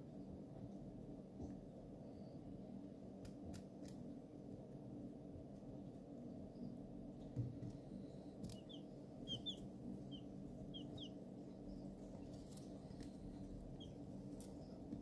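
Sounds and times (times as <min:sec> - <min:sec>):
steady low hum: 0:00.0 - 0:15.0
chicks peeping: 0:07.6 - 0:15.0.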